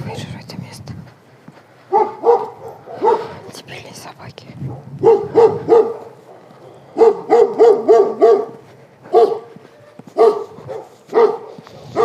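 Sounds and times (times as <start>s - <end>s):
dog barking: 1.9s - 3.5s, 4.7s - 12.0s.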